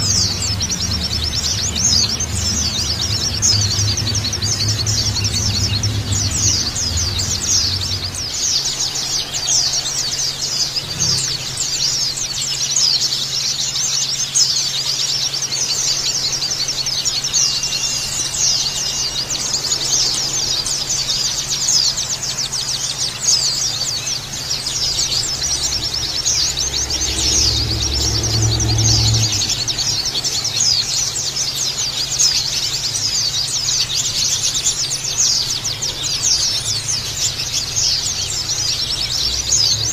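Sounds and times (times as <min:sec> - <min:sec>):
low rumble: 0:00.0 - 0:08.4
birds chirping: 0:00.0 - 0:39.9.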